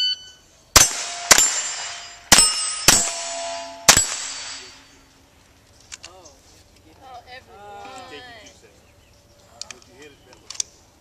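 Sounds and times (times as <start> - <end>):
steel target plate ringing: 0.0 - 5.0
rifle shots: 0.8 - 4.8.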